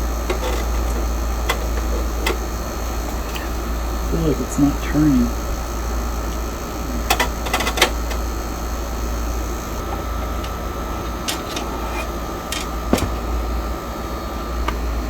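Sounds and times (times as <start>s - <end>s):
low mechanical hum: 0.0s - 15.0s
thin steady whine: 0.0s - 15.0s.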